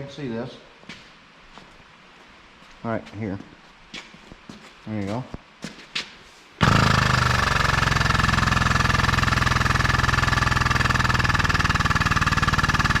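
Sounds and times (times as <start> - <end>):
hydraulic power unit pulsing hum: 6.6 - 13.0.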